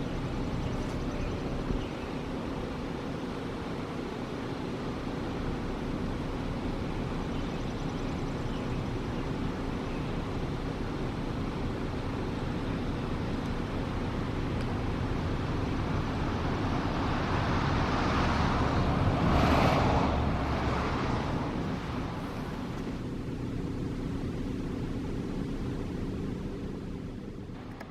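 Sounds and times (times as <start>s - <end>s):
low background rumble: 0.0s - 27.9s
car passing by: 15.7s - 23.0s.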